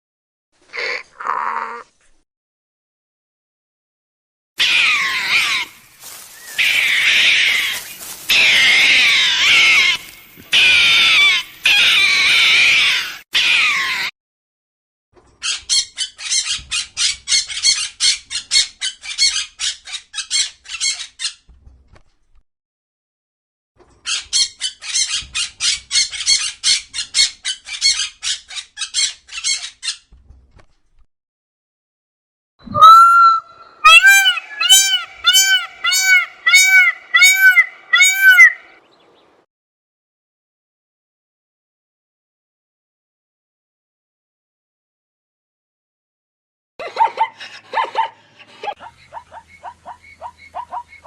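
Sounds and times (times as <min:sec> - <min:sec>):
high-pitched wavering animal chatter: 0:32.7 - 0:38.6.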